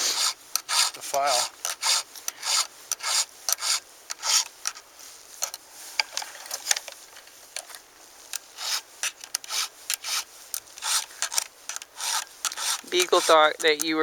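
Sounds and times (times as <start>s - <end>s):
file rasping on chainsaw chain: 0.0s - 4.5s, 8.6s - 14.0s.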